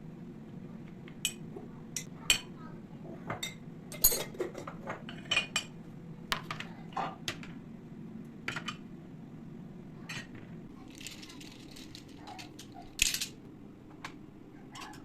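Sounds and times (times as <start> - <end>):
dishes and cutlery clinking: 3.3 - 5.7.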